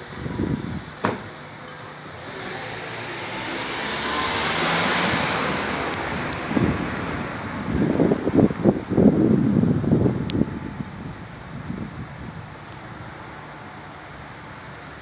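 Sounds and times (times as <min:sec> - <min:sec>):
car tyre hiss passing: 0:02.2 - 0:08.2
wind buffeting microphone: 0:03.2 - 0:13.4.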